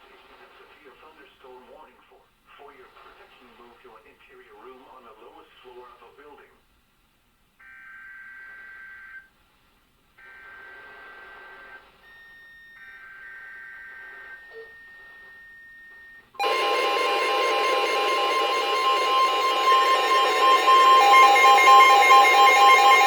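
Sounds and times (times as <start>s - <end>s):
buzzy warbling data tones: 16.4s - 23.0s
steady warning alarm tone: 16.4s - 23.0s.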